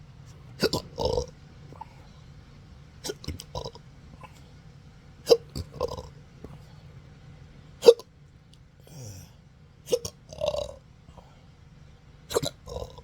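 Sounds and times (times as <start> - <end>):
hiccups: 0.6 - 2.0, 3.0 - 4.4, 5.2 - 6.1, 7.8 - 8.1, 9.9 - 10.8, 12.3 - 13.0.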